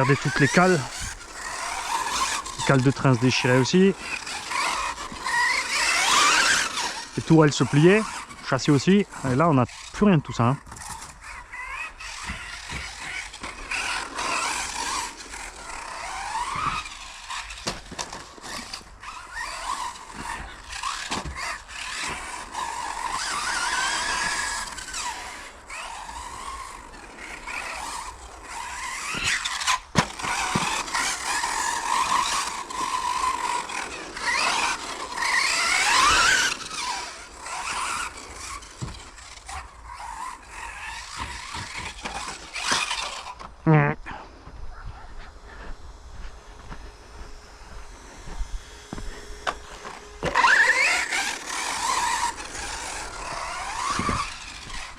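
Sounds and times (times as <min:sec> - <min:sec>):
electric motor whining: 0:00.0 - 0:54.9
tyre squeal on carpet: 0:47.9 - 0:54.9.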